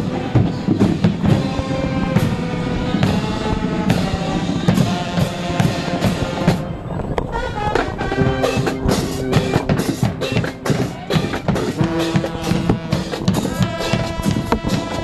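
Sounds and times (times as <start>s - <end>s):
snare and bass drums: 0.0s - 2.4s, 3.0s - 6.6s, 7.8s - 15.0s
marching band playing: 0.0s - 15.0s.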